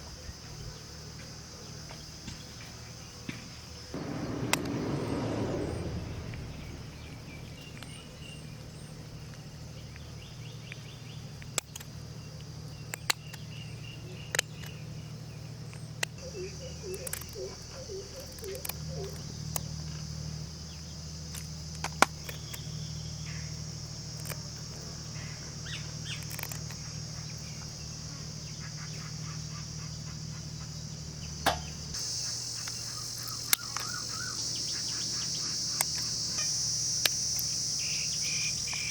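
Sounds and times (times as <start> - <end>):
insects chirping: 0.0 - 38.9
low steady hum: 4.0 - 9.1.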